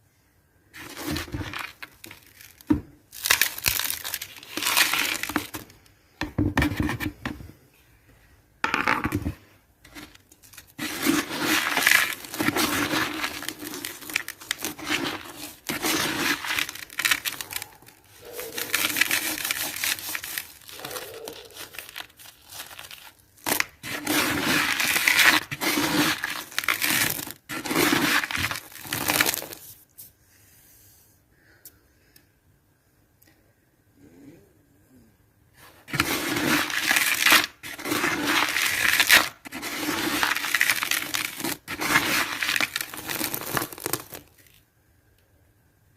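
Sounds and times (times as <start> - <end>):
cement crumbling and crunching: 0.7 - 7.2, 8.6 - 29.7, 35.8 - 44.6.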